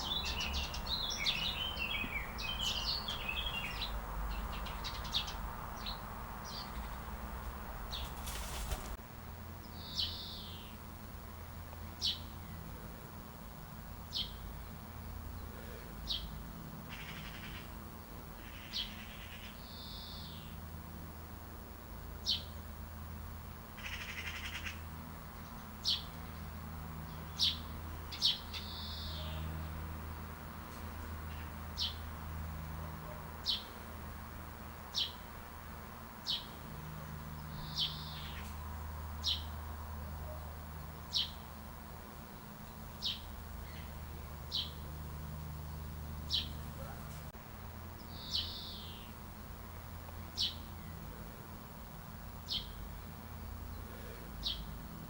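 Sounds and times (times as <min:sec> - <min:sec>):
bird chirping: 0:00.0 - 0:07.2, 0:09.6 - 0:10.8, 0:16.9 - 0:20.6, 0:25.4 - 0:29.7, 0:36.2 - 0:38.6, 0:42.6 - 0:44.8, 0:45.6 - 0:47.0, 0:48.0 - 0:51.0, 0:52.4 - 0:54.7.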